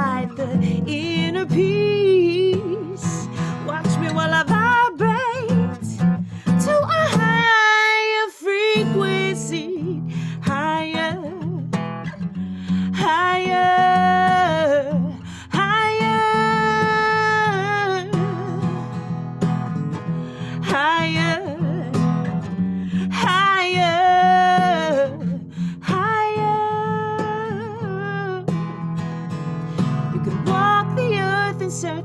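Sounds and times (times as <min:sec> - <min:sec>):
strummed acoustic guitar: 0:00.0 - 0:32.0
woman singing: 0:00.0 - 0:32.0.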